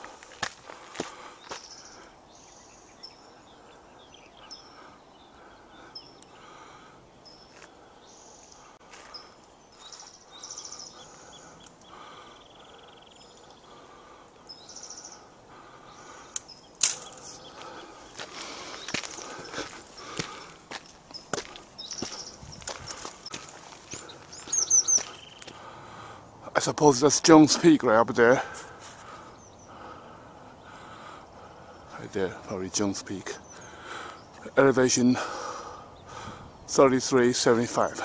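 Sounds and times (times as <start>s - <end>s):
footsteps on dirt trail: 0.0s - 2.4s, 7.3s - 12.3s, 15.5s - 25.8s
birds singing: 0.0s - 38.0s
faint outdoor hiss: 0.0s - 38.0s.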